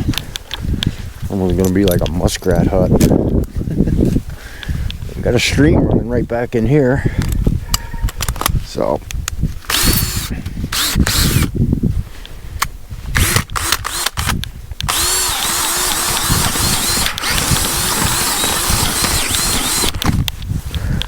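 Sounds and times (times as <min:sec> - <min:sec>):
power drill boring into soil: 0:09.7 - 0:11.5, 0:13.1 - 0:20.3.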